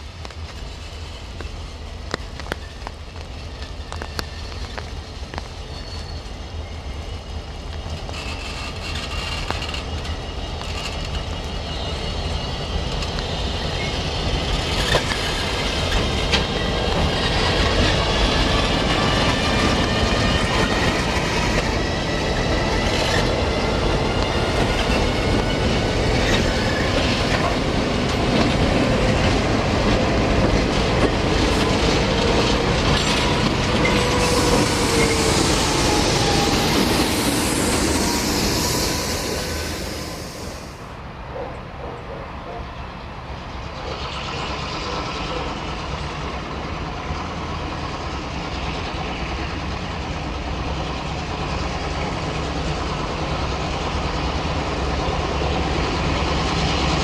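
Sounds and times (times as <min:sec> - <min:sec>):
train wheels squealing: 0:00.0 - 0:29.5, 0:30.2 - 0:40.8, 0:41.4 - 0:57.0
deep train rumble: 0:00.0 - 0:57.0
wheels clicking on rails: 0:07.8 - 0:11.6.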